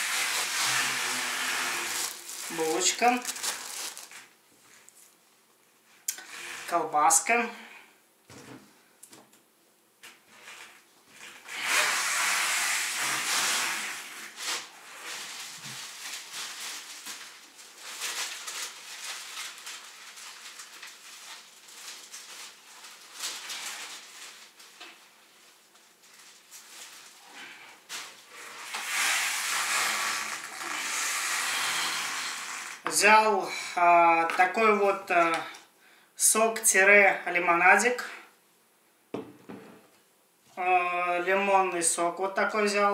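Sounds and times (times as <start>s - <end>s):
plastic bags rustling: 0.0s - 5.2s, 12.8s - 32.9s.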